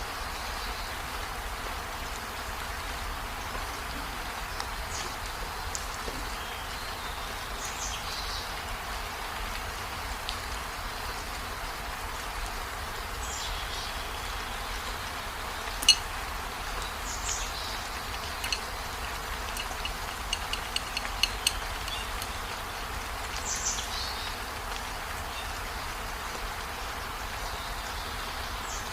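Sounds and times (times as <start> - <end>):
rain-like hiss: 0.0 - 28.9
sharp clicks: 15.8 - 16.0, 18.3 - 22.4.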